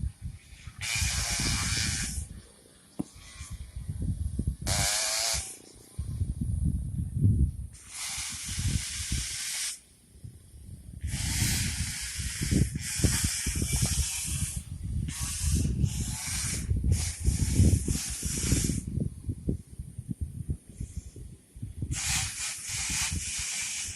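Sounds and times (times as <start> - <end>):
loud hiss: 0.0 - 2.4, 4.6 - 6.1, 7.7 - 18.9, 21.8 - 23.9
wind buffeting microphone: 0.0 - 23.9.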